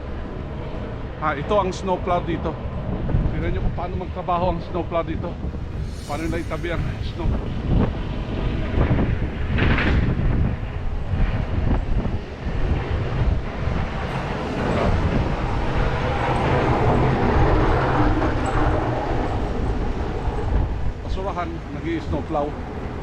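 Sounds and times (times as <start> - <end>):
snow rushing noise: 5.5 - 21.9
snowplow truck rumbling: 13.9 - 23.0.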